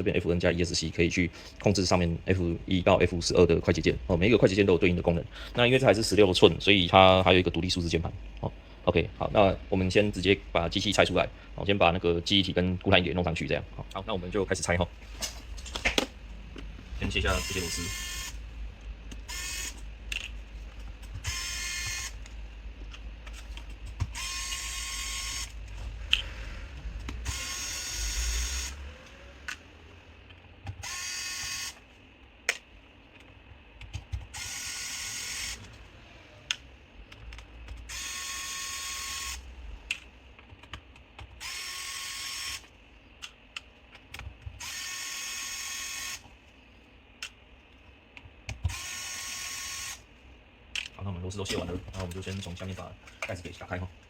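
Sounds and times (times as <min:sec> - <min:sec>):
electric screwdriver whirring: 0:17.3 - 0:18.4, 0:19.2 - 0:19.8, 0:21.2 - 0:22.2, 0:24.0 - 0:25.5, 0:27.2 - 0:28.8, 0:30.8 - 0:31.8, 0:34.3 - 0:35.7, 0:37.9 - 0:39.4, 0:41.4 - 0:42.6, 0:44.6 - 0:46.2, 0:48.6 - 0:50.0.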